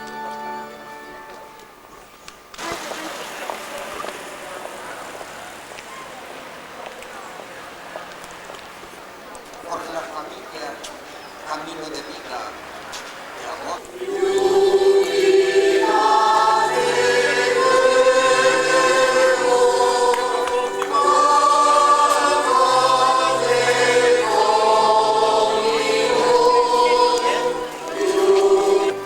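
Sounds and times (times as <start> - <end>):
choir singing: 13.8 - 29.0.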